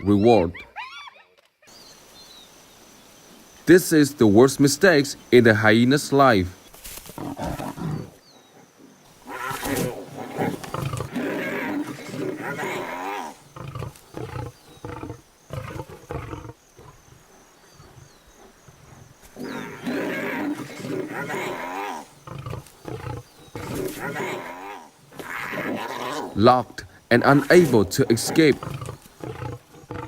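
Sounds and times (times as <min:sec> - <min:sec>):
lions growling and snarling: 0:07.1 - 0:26.6, 0:27.2 - 0:30.0.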